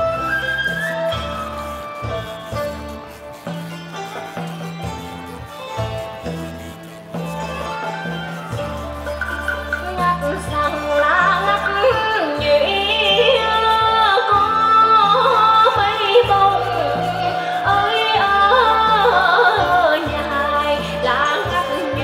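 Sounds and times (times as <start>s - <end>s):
instrumental ensemble bass notes: 0.0s - 11.9s
person singing with sliding notes: 9.4s - 22.0s.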